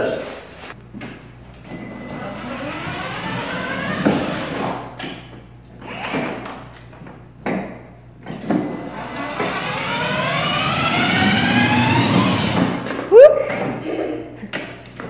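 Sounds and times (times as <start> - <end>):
electric motors whining: 1.2 - 7.0, 8.2 - 13.2.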